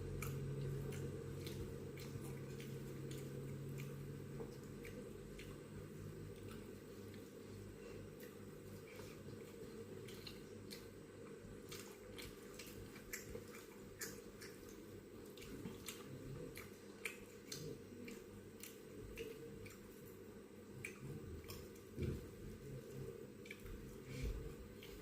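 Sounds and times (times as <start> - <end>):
person chewing: 0.0 - 25.0.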